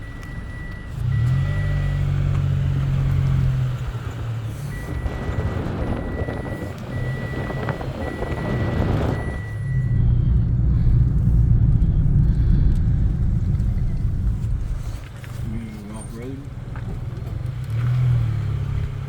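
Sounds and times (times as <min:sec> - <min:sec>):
car road and engine rumble: 0:00.0 - 0:19.0
high electronic beep: 0:04.7 - 0:10.4.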